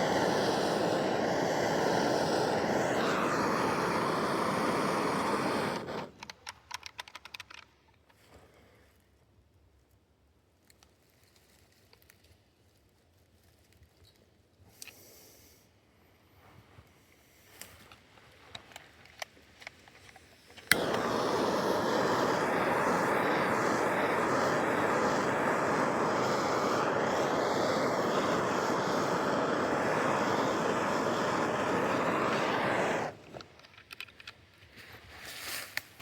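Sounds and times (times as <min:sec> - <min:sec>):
torch flame hissing: 0:00.0 - 0:06.3, 0:20.6 - 0:33.6
torch igniter click: 0:00.0 - 0:06.9, 0:20.6 - 0:34.3.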